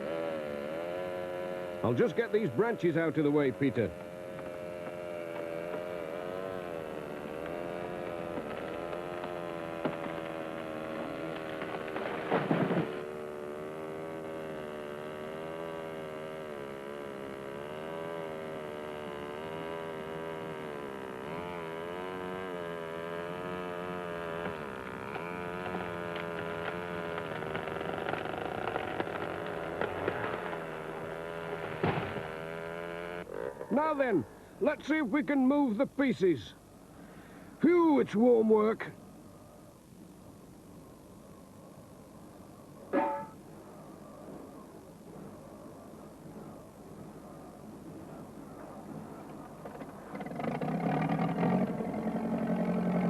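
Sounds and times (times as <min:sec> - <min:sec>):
chainsaw cutting wood: 0:00.0 - 0:34.1, 0:42.9 - 0:43.4, 0:48.9 - 0:53.0.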